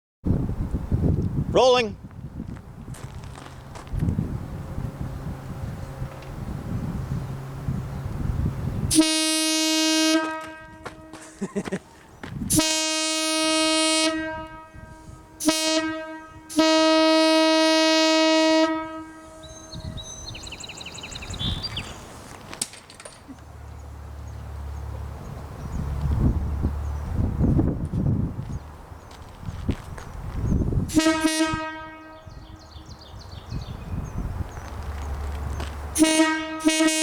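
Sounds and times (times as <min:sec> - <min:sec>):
locomotive air horn blasts: 0:08.9 - 0:11.3, 0:12.5 - 0:20.0, 0:30.9 - 0:32.7, 0:35.9 - 0:37.0.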